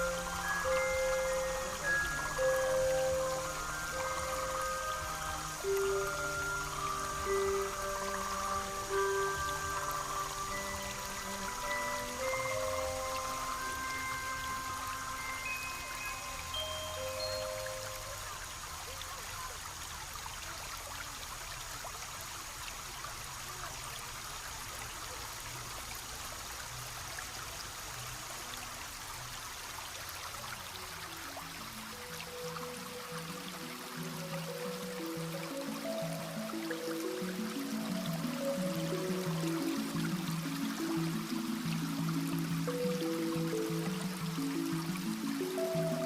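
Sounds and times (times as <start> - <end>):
waltz with bell-like mallet notes: 0.0 - 19.0, 31.0 - 46.0
light drips and splashes: 0.0 - 46.0
water trickling: 0.0 - 46.0.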